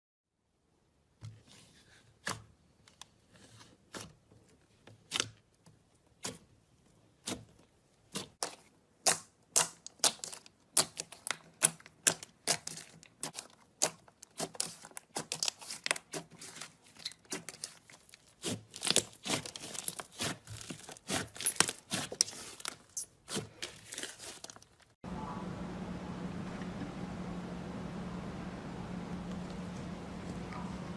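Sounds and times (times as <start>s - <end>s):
low hum: 25.0s - 30.9s.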